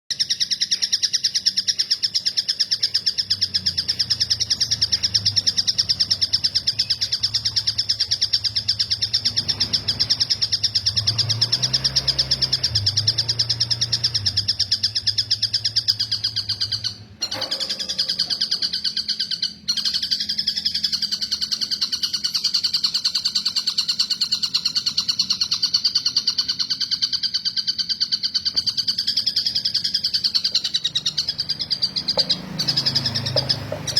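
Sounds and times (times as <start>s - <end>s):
bird rapid high trill: 0.1s - 33.9s.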